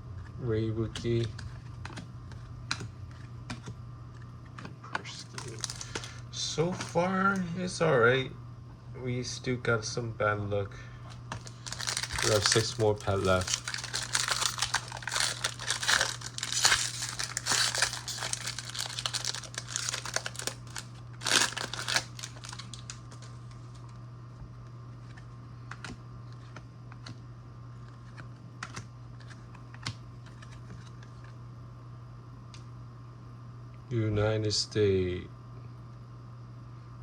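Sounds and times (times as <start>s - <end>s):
steady low hum: 0.0s - 37.0s
foil wrapper crinkling and tearing: 5.1s - 7.0s, 11.3s - 23.8s.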